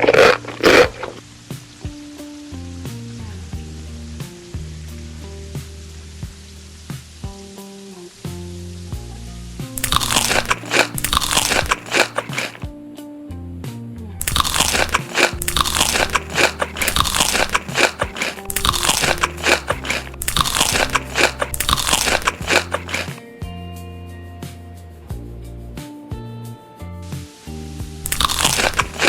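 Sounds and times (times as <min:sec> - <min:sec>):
crunchy food being chewed: 0:00.0 - 0:01.3, 0:09.8 - 0:12.7, 0:14.2 - 0:23.2, 0:28.0 - 0:29.0.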